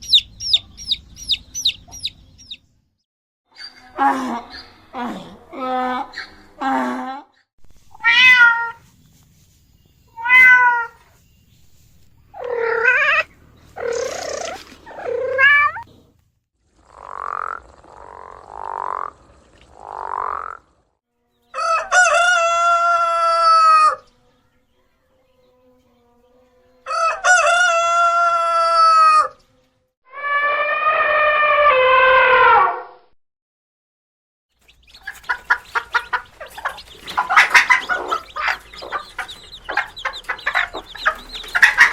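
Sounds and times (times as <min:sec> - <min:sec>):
animal calls: 0:12.3 - 0:15.8, 0:34.6 - 0:41.9.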